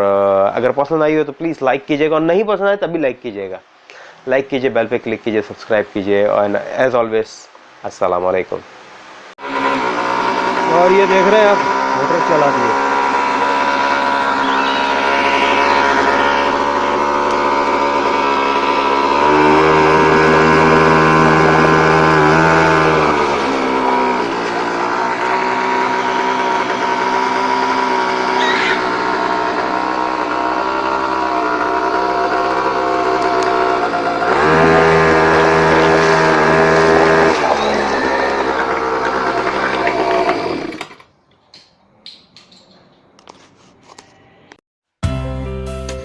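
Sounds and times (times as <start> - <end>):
outboard motor running: 9.4 - 41.0.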